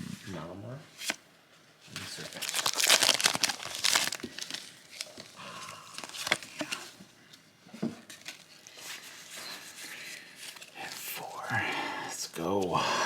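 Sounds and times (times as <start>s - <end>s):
foil wrapper crinkling and tearing: 2.0s - 6.8s.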